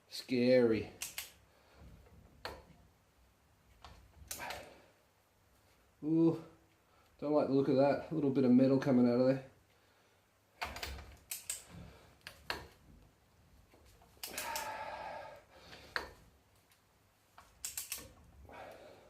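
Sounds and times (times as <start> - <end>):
tools clicking on metal: 1.0 - 1.4, 10.6 - 12.6, 14.2 - 14.8, 17.4 - 18.3.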